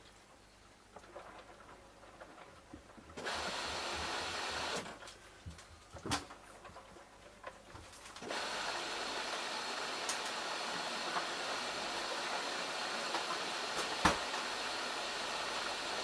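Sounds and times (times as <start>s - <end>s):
water rushing into washing machine: 3.2s - 4.9s, 8.2s - 16.0s.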